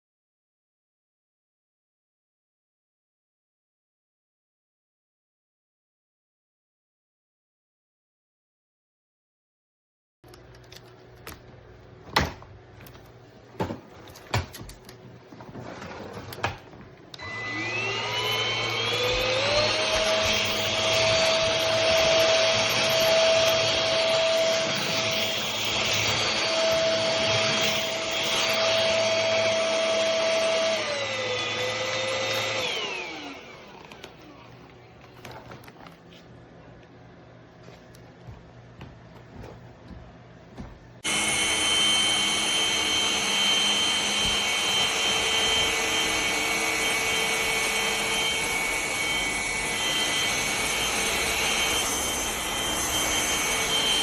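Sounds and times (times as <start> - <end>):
vacuum motor whine: 15.4 - 35.9, 40.6 - 54.0.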